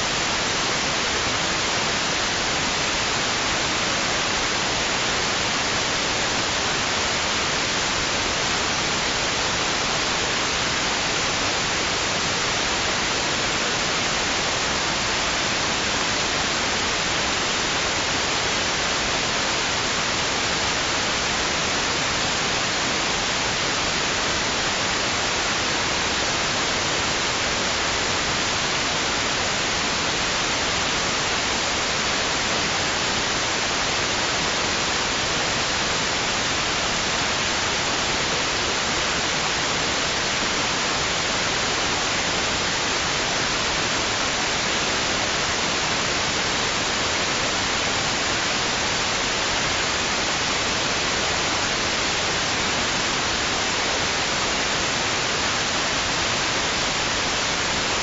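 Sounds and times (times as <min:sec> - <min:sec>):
white noise hiss: 0:00.0 - 0:58.0.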